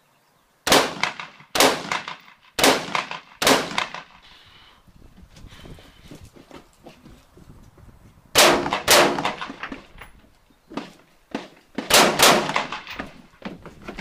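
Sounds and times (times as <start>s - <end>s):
rifle shots: 0.7s - 4.2s, 8.4s - 9.8s, 11.8s - 13.2s.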